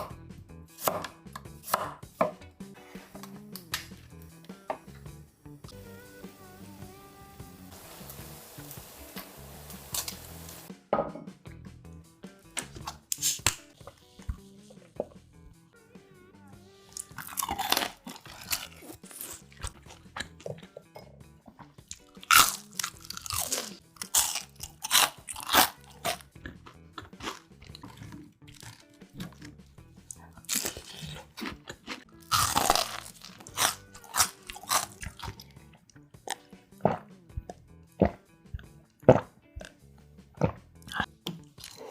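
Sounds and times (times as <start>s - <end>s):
background music: 0.0s - 41.9s
crunchy bites and chewing: 16.9s - 20.6s, 21.9s - 29.6s, 30.3s - 35.5s, 40.4s - 41.9s.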